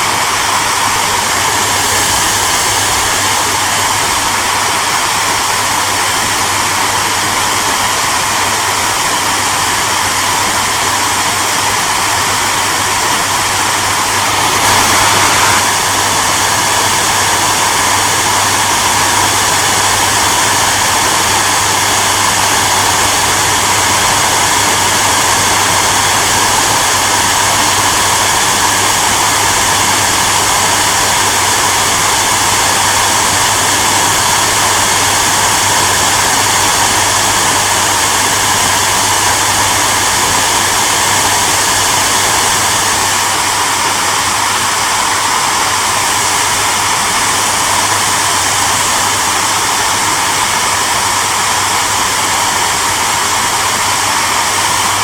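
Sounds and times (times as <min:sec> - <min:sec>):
hair dryer blowing: 0:00.0 - 0:55.0.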